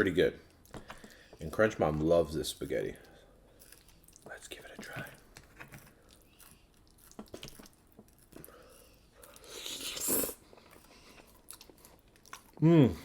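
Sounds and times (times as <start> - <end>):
eating clicks and squishes: 0.4 - 1.5, 3.0 - 12.6
slurping spaghetti: 8.5 - 11.8.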